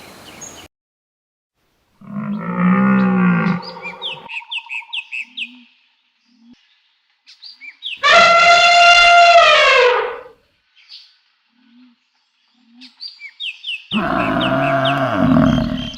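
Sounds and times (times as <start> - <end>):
low drawn-out animal call: 2.0 - 4.3, 8.0 - 10.3, 13.9 - 15.9
high falling bird chirps: 2.3 - 5.2, 13.7 - 15.9.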